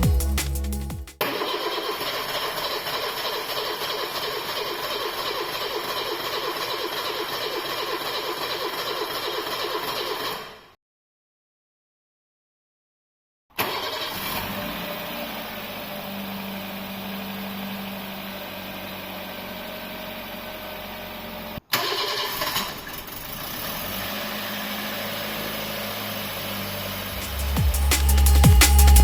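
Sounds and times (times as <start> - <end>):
car engine idling: 24.9 - 29.0.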